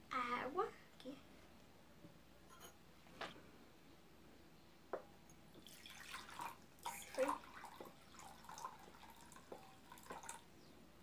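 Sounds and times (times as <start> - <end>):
water pouring into a container: 5.6 - 10.5.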